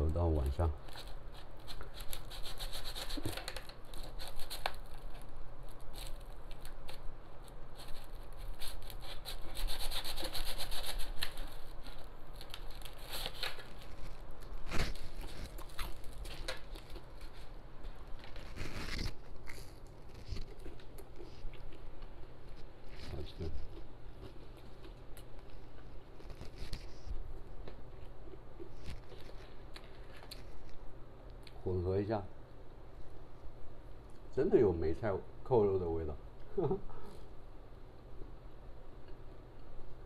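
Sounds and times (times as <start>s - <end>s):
plastic crinkling and rustling: 11.1s - 21.7s.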